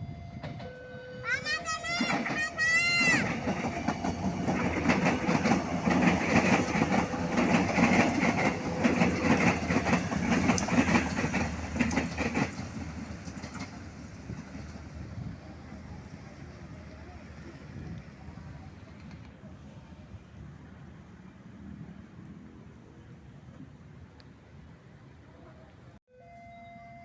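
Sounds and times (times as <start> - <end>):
train wheels clattering over rails: 1.9 - 15.4.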